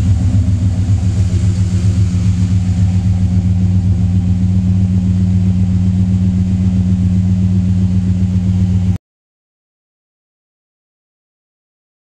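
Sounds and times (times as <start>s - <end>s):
car engine idling: 0.0s - 9.0s.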